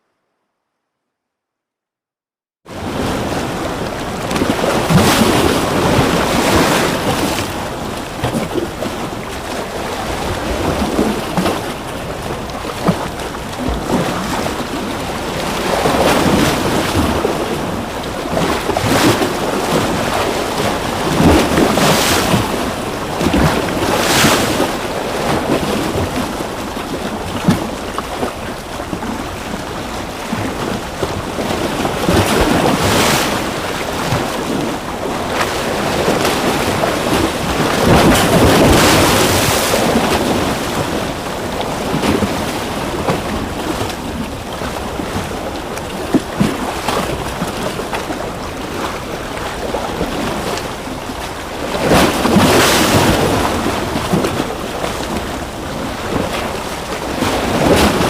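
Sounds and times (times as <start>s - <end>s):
ocean waves breaking on shore: 2.7s - 58.0s.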